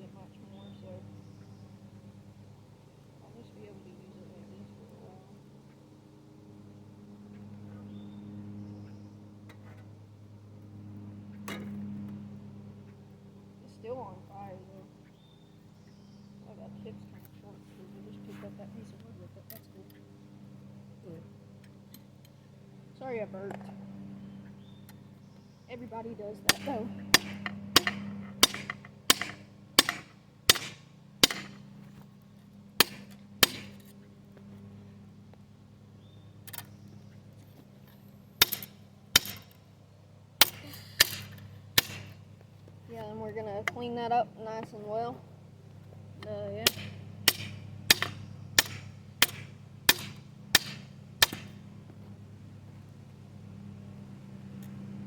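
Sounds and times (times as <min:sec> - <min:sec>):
steady low hum: 0:00.0 - 0:55.0
hammer striking steel on anvil: 0:26.5 - 0:31.6, 0:32.8 - 0:33.9, 0:38.4 - 0:39.6, 0:40.4 - 0:42.2, 0:46.6 - 0:51.6.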